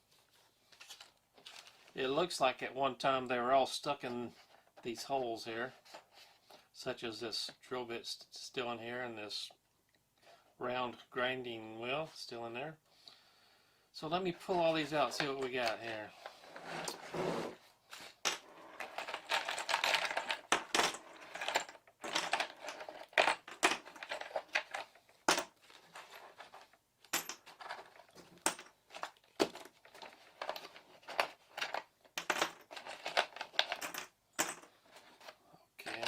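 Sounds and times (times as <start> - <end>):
metal and plastic clicks and clatters: 18.3 - 34.6.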